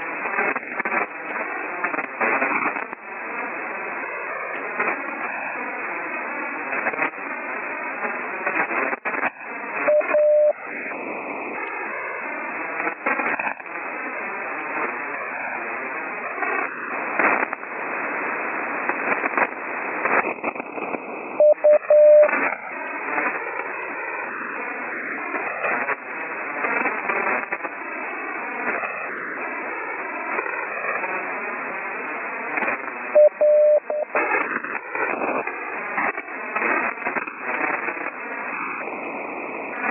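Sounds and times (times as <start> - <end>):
radio band hiss: 0.0 - 39.9
static crackles: 0.0 - 39.9
morse code tone: 9.9 - 10.6, 21.4 - 22.3, 33.2 - 34.2.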